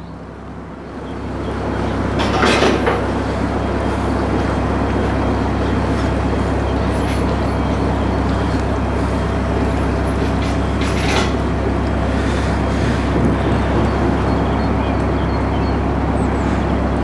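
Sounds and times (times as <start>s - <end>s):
boat diesel engine humming: 0.0s - 17.0s.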